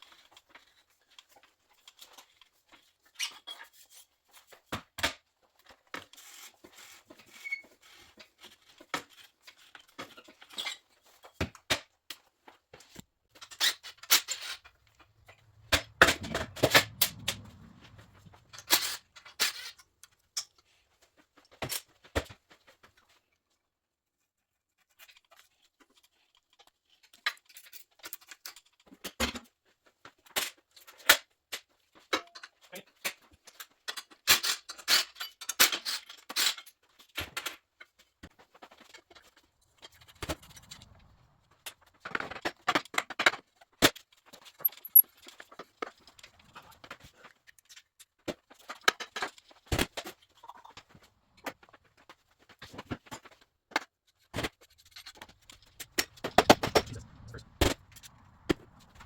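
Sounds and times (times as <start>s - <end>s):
low rumble: 14.8s - 19.2s, 39.6s - 41.7s, 55.4s - 59.0s
hand tools clicking and knocking: 44.6s - 45.4s, 54.8s - 59.0s
metal bike parts handled: 44.6s - 47.0s.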